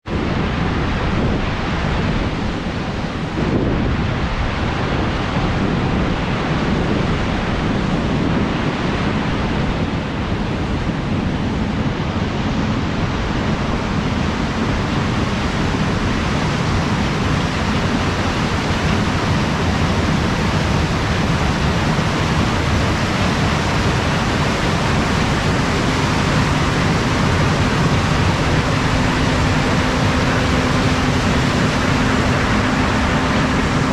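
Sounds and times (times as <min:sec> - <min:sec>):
wind blowing across microphone: 0:00.0 - 0:33.9
faint steady hum: 0:10.5 - 0:33.9.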